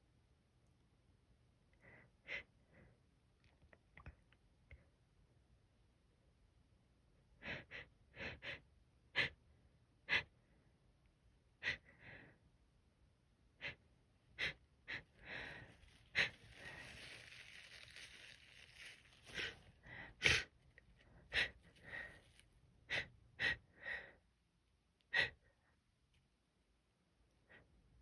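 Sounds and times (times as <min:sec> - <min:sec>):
person hitching breaths: 0:13.6 - 0:24.2, 0:25.1 - 0:25.8
long drawn-out breath: 0:14.4 - 0:24.2.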